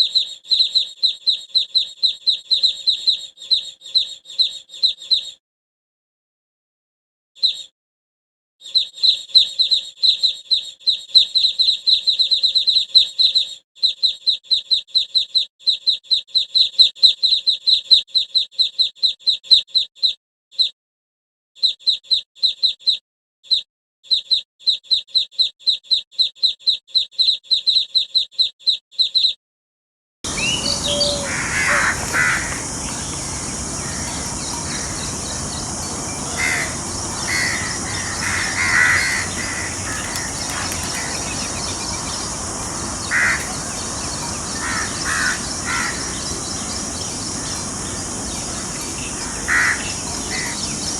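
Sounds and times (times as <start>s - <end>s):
bird chirping rapidly: 30.3s - 50.9s
other birds calling: 30.3s - 50.9s
steady hiss: 30.3s - 50.9s.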